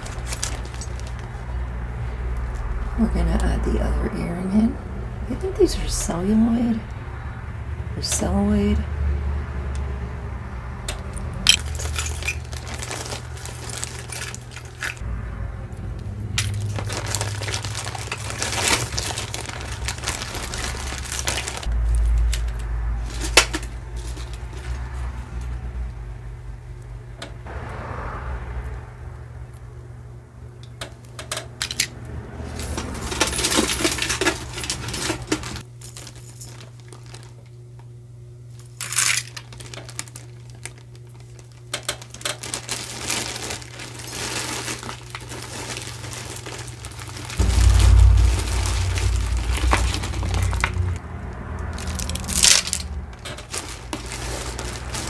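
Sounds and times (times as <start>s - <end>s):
packaging crinkling: 0.0s - 1.5s, 11.5s - 15.0s, 16.4s - 25.0s, 32.4s - 37.6s, 38.6s - 51.0s, 51.6s - 55.0s
steady low hum: 28.6s - 55.0s.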